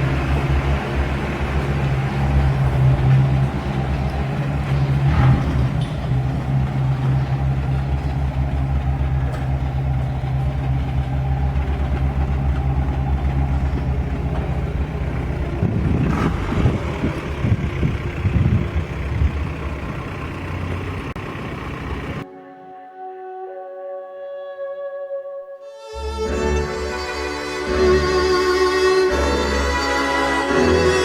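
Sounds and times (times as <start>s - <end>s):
car engine idling: 0.0s - 22.3s.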